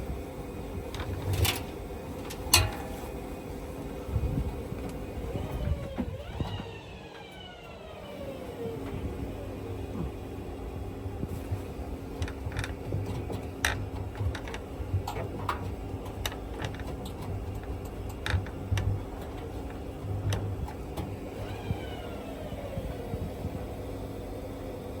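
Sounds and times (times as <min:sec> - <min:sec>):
washing machine humming: 0:00.0 - 0:25.0.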